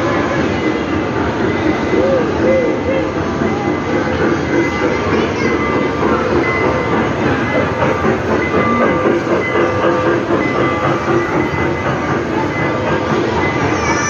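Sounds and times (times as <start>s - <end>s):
train running: 0.0s - 14.0s.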